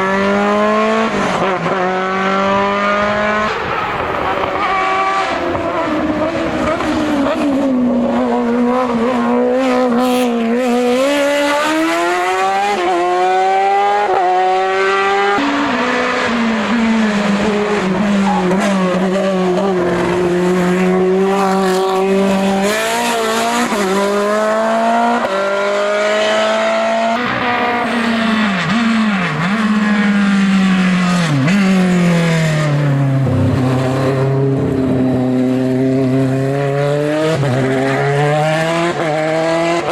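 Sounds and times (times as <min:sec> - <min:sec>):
race car engine accelerating: 0:00.0 - 0:39.9
engine throttle blips: 0:27.2 - 0:32.3.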